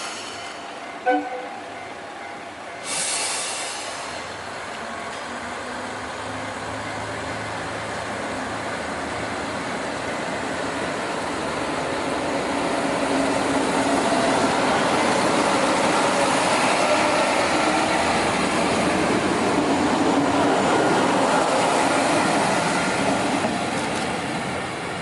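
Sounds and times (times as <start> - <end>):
diesel train running: 0.0 - 25.0.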